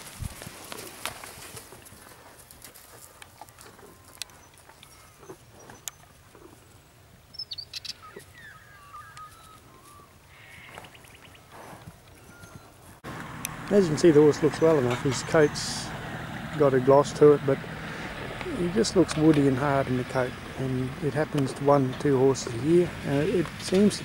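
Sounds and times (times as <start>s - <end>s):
horse hooves stepping: 0.0s - 6.6s, 11.6s - 24.0s
birds chirping: 3.9s - 24.0s.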